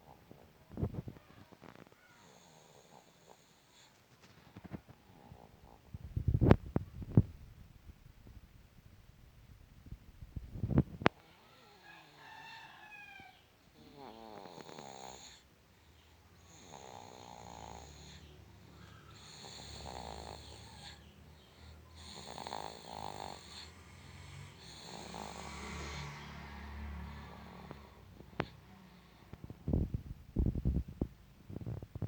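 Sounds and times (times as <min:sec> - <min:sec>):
baby snoring: 0:01.6 - 0:07.2, 0:13.8 - 0:15.5, 0:16.4 - 0:29.4.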